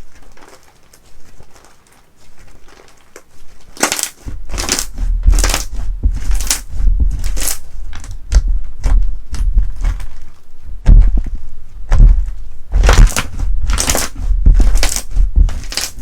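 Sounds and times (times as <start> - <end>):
crunchy slime crackling: 0.0 - 16.0
low thump: 10.7 - 15.6.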